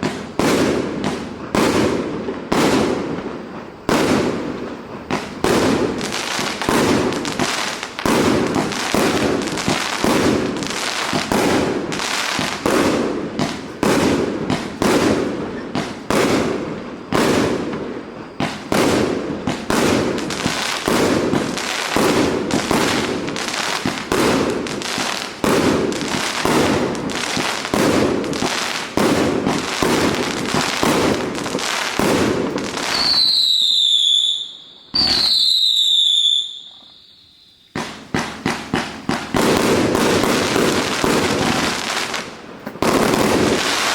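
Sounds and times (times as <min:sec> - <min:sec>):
fireworks bangs with rumbling tail: 0:00.0 - 0:34.2, 0:37.8 - 0:43.9
high whistle falling in pitch: 0:32.9 - 0:37.8.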